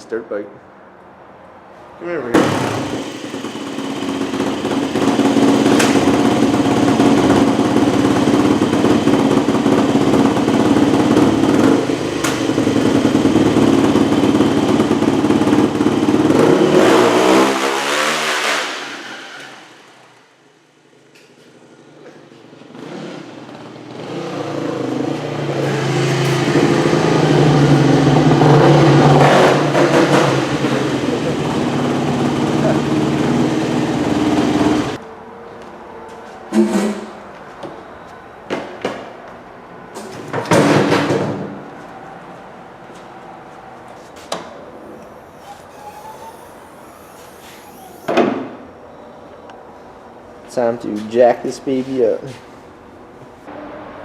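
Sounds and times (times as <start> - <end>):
dirt bike engine revving: 2.4 - 19.8, 22.7 - 35.0, 44.8 - 48.6.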